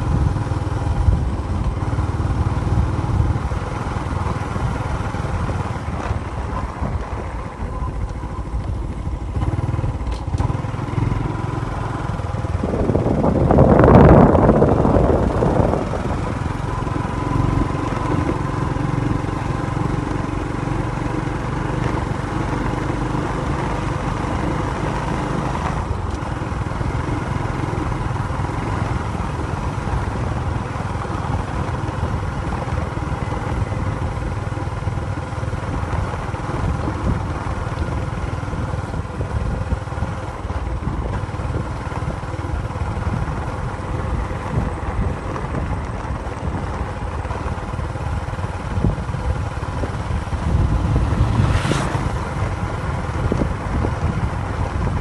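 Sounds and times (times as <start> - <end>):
road traffic rumble: 0.0 - 55.0
vehicle passing close: 43.0 - 55.0.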